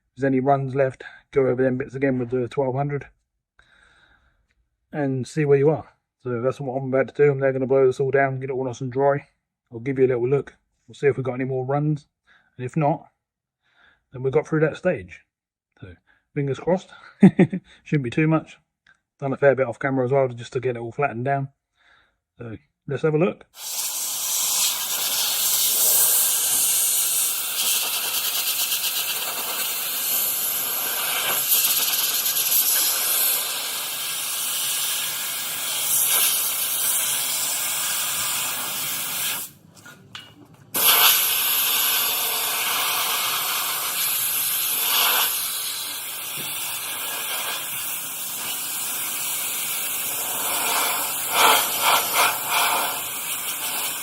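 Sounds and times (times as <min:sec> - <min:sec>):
air blow gun hissing: 0:23.6 - 0:39.6, 0:40.7 - 0:54.0.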